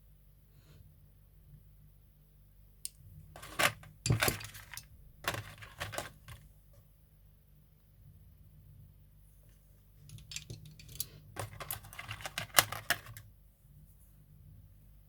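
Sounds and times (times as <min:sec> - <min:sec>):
small objects clattering on hard surface: 0:03.4 - 0:06.4, 0:10.1 - 0:13.2.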